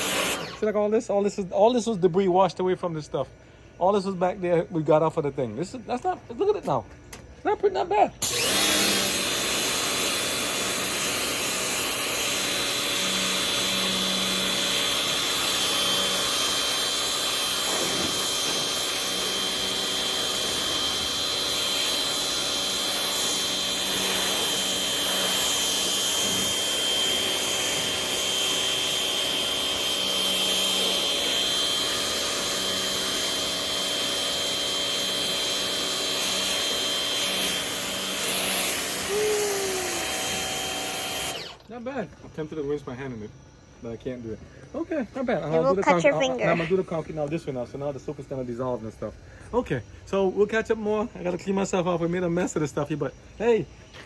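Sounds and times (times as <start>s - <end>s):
pressure washer motor whine: 0.0s - 0.8s, 8.2s - 42.0s
water spray hissing: 17.6s - 18.7s.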